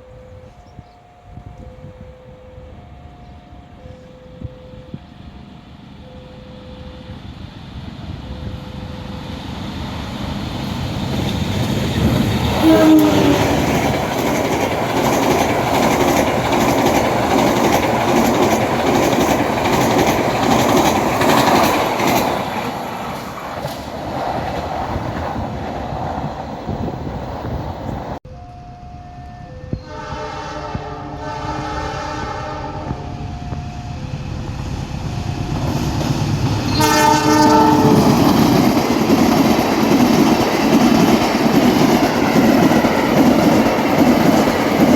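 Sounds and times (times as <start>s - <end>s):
crossing warning tones: 0.0s - 44.9s
train passing: 0.0s - 44.9s
wheels clicking over rail joints: 8.5s - 28.6s, 37.5s - 44.9s
train horn: 12.5s - 14.1s, 29.7s - 33.6s, 36.7s - 38.4s.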